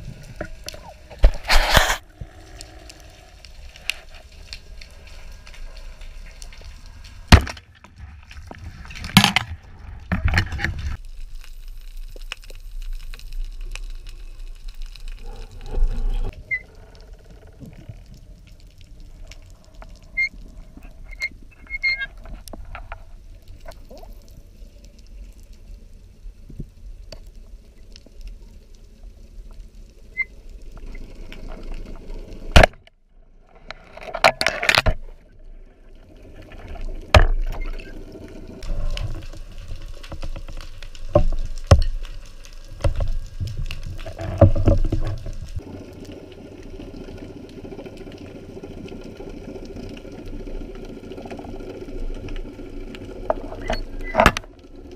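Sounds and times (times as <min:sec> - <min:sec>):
muffled underwater rumble: 0:13.1 - 0:32.5.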